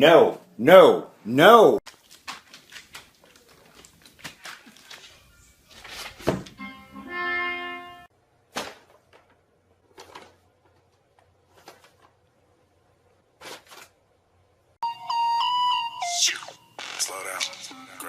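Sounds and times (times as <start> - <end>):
held musical tone: 6.5 - 8.1, 14.8 - 18.0.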